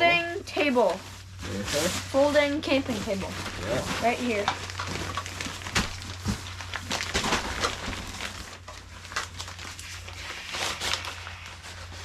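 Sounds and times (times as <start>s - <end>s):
low steady hum: 0.0s - 12.0s
packaging rustling: 0.2s - 12.0s.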